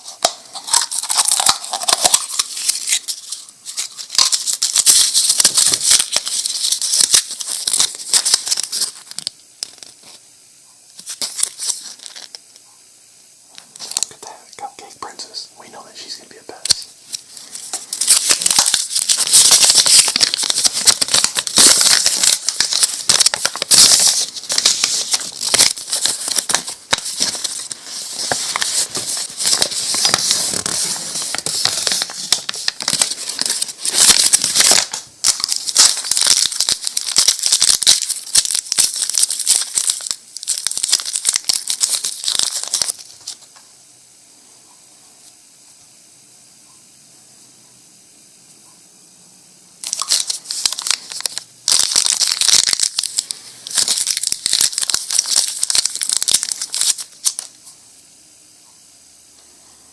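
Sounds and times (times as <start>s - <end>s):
plastic packaging crinkling: 0.0s - 10.2s, 11.0s - 12.4s, 16.6s - 43.5s, 49.8s - 57.6s
faint room hiss: 0.0s - 59.9s.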